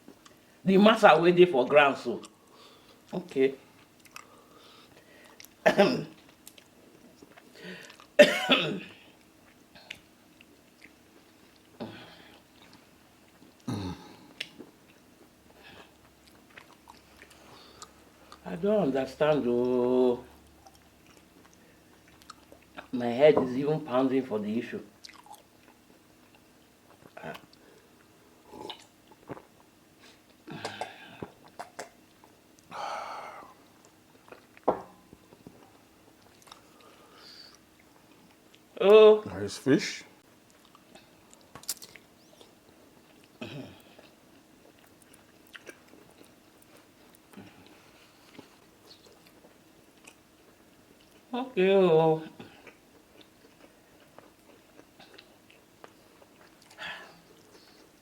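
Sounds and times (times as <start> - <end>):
soft chewing: 2.2 - 5.6, 6.2 - 8.2, 9.0 - 18.5, 19.6 - 22.9, 24.9 - 32.7, 33.5 - 38.8, 40.2 - 51.3, 52.3 - 58.0
mouth clicks: 30.6 - 32.0.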